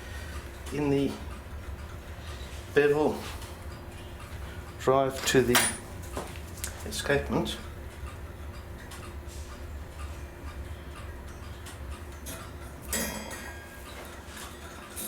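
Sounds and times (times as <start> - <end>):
low steady hum: 0.0 - 15.0
ringing metallic clink: 12.2 - 13.8.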